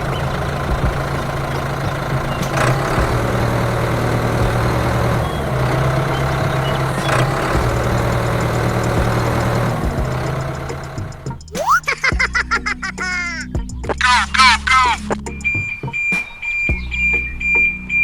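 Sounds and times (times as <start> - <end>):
tractor engine running: 0.0 - 11.6.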